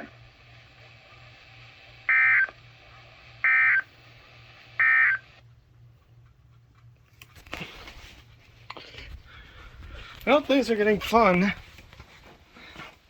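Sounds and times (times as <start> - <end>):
radio background hiss: 0.0 - 5.5, 10.2 - 11.9
digital data tone bursts: 4.8 - 5.2.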